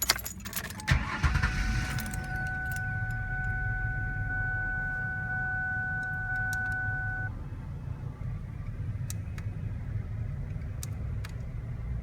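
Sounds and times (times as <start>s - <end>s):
car engine idling: 0.7s - 12.0s
high electronic tone: 1.9s - 7.3s.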